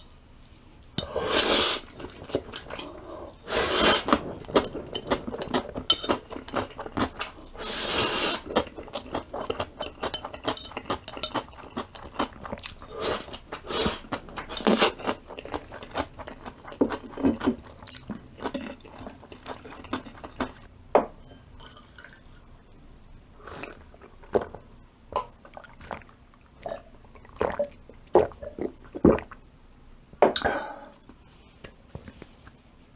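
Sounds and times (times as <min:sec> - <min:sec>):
person chewing noodles: 0:01.0 - 0:20.7, 0:25.4 - 0:29.3.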